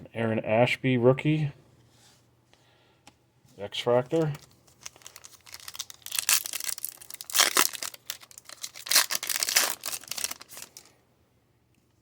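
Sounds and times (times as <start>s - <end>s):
foil wrapper crinkling: 4.1s - 11.0s.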